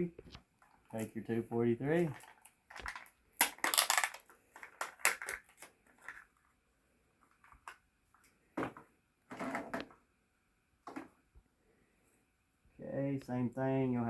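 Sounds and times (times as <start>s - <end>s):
plastic packaging crinkling: 2.0s - 6.6s
plastic packaging clicks: 2.1s - 6.3s.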